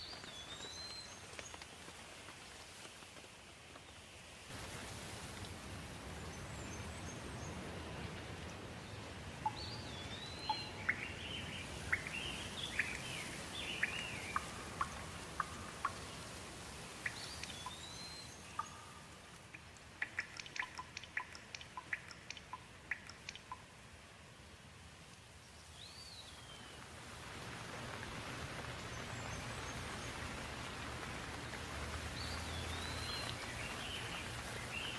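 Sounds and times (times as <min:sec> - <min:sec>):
rain hiss: 0:00.0 - 0:34.9
songbird singing whistled phrases: 0:09.5 - 0:15.6, 0:17.1 - 0:19.0.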